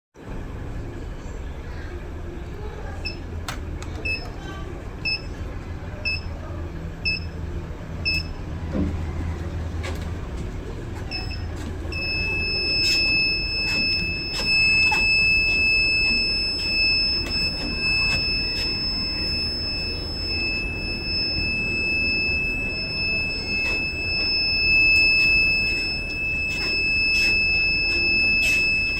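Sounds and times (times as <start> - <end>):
treadmill console beeping: 3.0 - 3.3, 4.0 - 4.4, 5.0 - 5.4, 6.0 - 6.3, 7.0 - 7.4, 8.0 - 8.5, 11.0 - 28.9.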